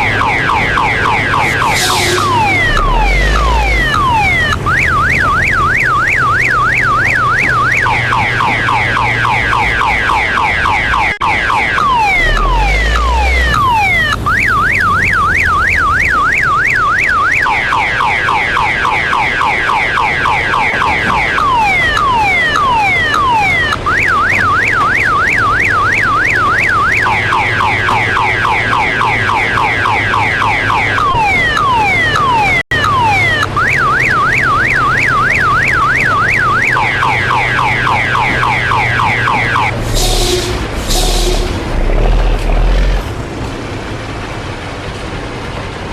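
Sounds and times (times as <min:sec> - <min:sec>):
low engine drone: 0:00.0 - 0:08.8, 0:11.8 - 0:16.0, 0:25.4 - 0:45.9
electronic multi-tone alarm: 0:00.0 - 0:41.7.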